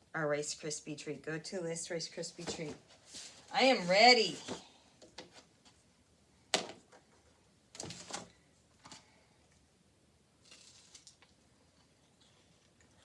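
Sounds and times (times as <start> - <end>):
soft rustling: 2.2 - 5.9
crackly rustle: 10.4 - 13.0.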